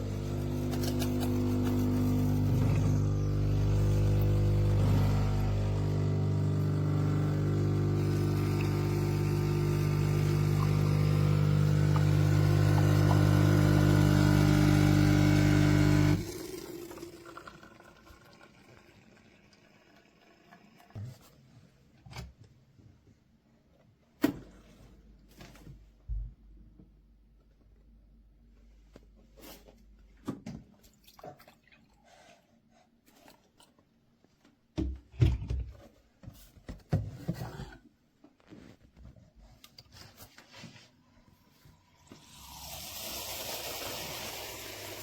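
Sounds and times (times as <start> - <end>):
espresso machine humming: 0.0 - 17.4, 42.0 - 45.0.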